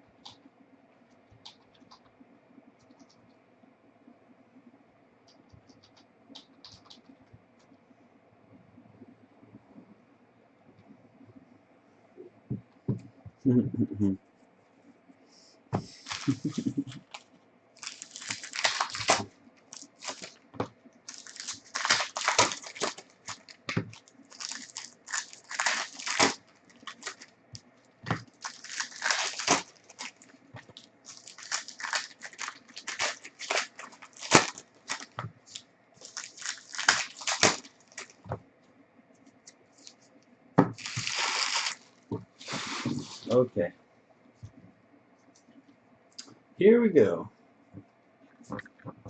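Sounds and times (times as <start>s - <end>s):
wrappers tearing and crinkling: 16.0s - 20.4s, 21.1s - 27.3s, 28.1s - 38.2s, 40.7s - 43.3s.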